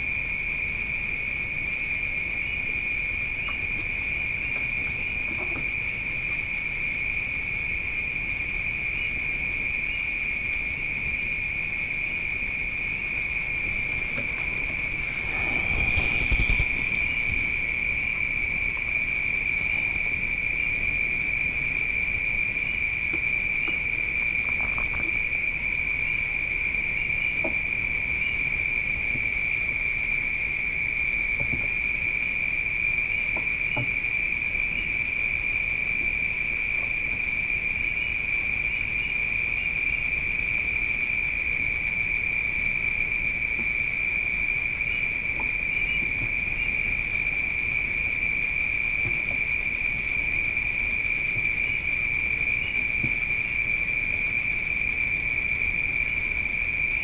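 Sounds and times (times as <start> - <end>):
insects trilling: 0.0 - 57.0
low rumble: 13.7 - 18.6.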